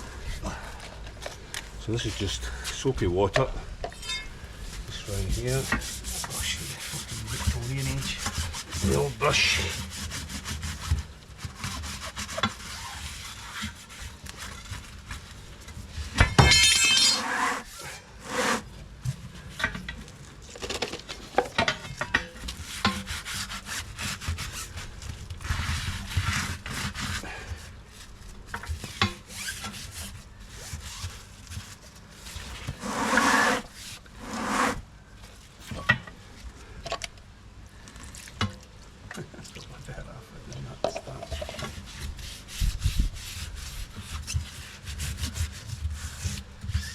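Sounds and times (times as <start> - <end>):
brush scrubbing soapy tyre: 4.8 - 15.3, 17.1 - 18.7, 22.6 - 34.8, 41.4 - 46.9.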